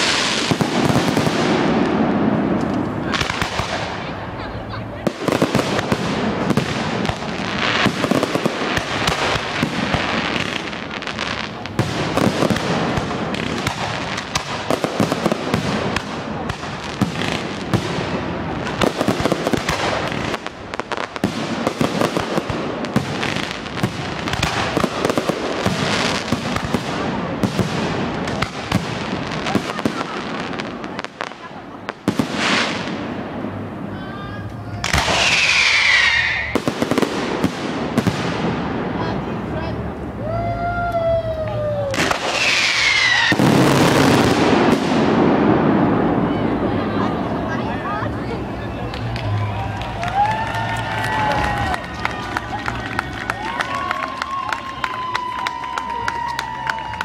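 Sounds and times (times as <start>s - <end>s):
sharp firework bangs: 0.0s - 4.3s, 5.0s - 33.7s, 34.8s - 39.1s, 41.9s - 46.8s
fireworks bursts and crackle: 0.0s - 57.0s.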